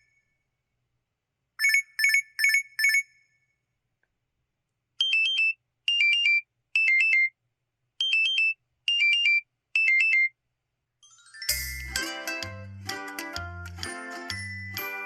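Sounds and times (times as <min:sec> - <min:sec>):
phone alarm beeps: 0:05.0 - 0:07.4, 0:08.0 - 0:10.4.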